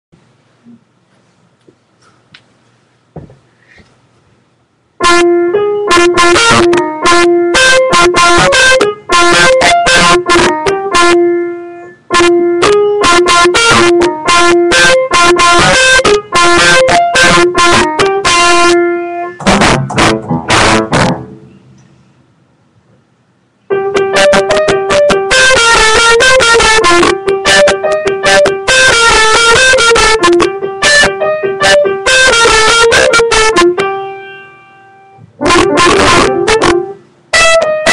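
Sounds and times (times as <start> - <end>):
loud piano melody: 5.0 - 22.1, 23.6 - 37.9.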